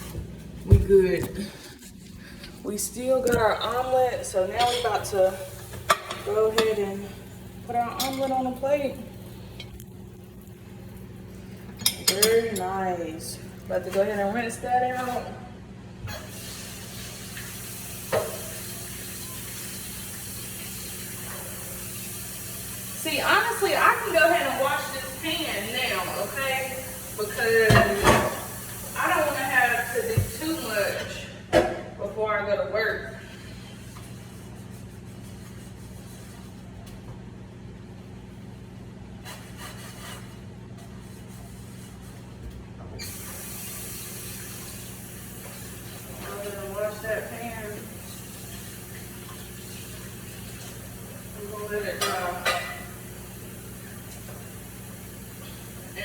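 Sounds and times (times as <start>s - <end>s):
faucet running into sink: 16.2s - 31.0s, 43.0s - 56.0s
rubbing and handling sounds: 33.8s - 36.7s, 39.2s - 42.4s.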